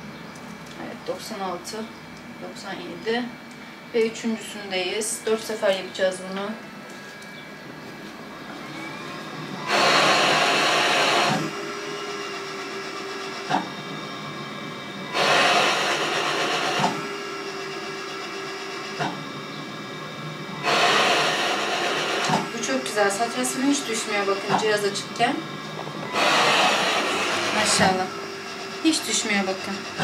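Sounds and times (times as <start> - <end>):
machine humming: 0.0 - 30.0
machine air rushes: 9.6 - 13.8, 15.1 - 19.2, 20.6 - 22.8, 25.9 - 29.1.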